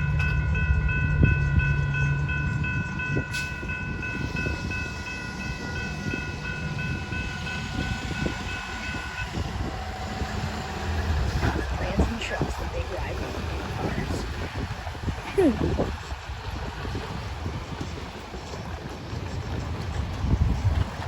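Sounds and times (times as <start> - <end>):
crossing bell ringing: 0.0 - 13.9
train rumble: 0.0 - 21.0.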